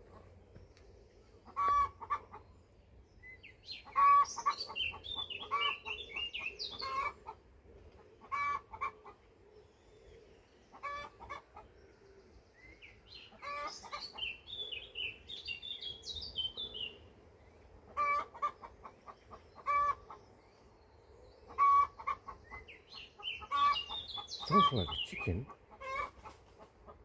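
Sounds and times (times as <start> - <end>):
bird clucking calls: 0.0 - 2.7, 3.5 - 17.0, 17.8 - 20.5, 21.4 - 27.0
bird chirping notes: 22.5 - 25.5.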